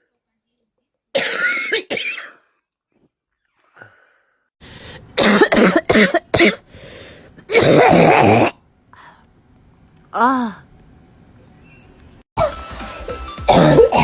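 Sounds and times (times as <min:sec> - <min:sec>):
person coughing: 0:01.2 - 0:02.5, 0:04.9 - 0:06.7, 0:07.5 - 0:08.6, 0:13.5 - 0:14.0.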